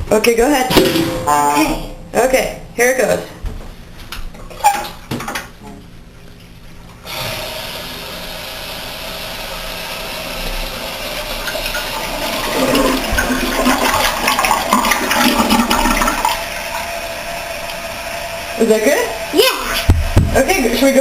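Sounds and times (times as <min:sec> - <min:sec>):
toilet flushing: 0:07.0 - 0:21.0.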